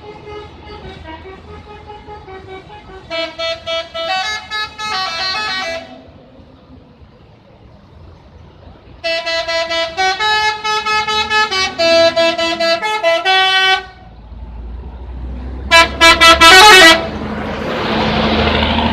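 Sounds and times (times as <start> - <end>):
bus melody horn: 0.0 - 6.0, 9.0 - 14.1, 15.7 - 17.1.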